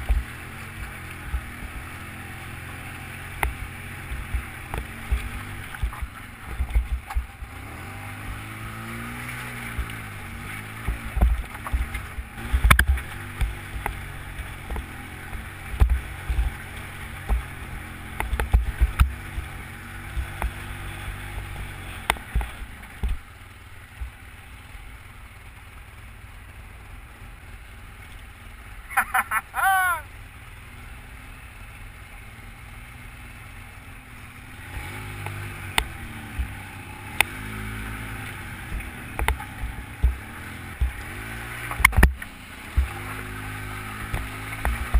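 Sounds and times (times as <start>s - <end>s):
atv engine revving: 0.0s - 44.9s
low thumps and knocks: 38.7s - 41.0s.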